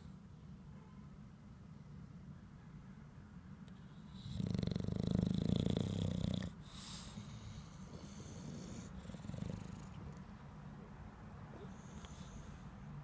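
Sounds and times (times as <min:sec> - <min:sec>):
dog breathing: 0:03.8 - 0:10.9, 0:11.5 - 0:13.0
dog snoring: 0:03.9 - 0:10.3, 0:11.5 - 0:12.6.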